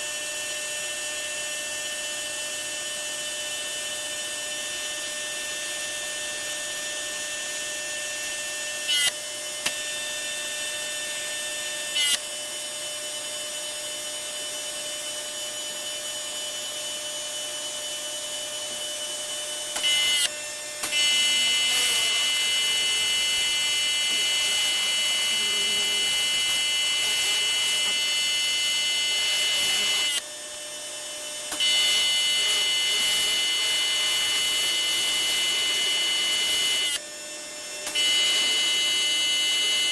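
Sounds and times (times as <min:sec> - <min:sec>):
pressure washer whining: 0:19.7 - 0:30.3, 0:31.5 - 0:39.9.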